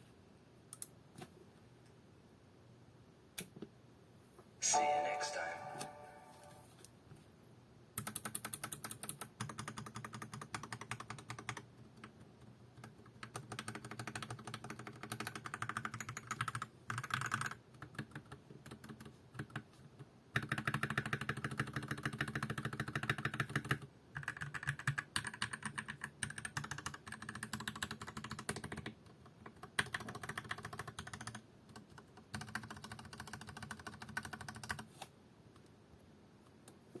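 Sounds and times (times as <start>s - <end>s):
mechanical keyboard typing: 8.0s - 19.6s, 20.3s - 34.9s.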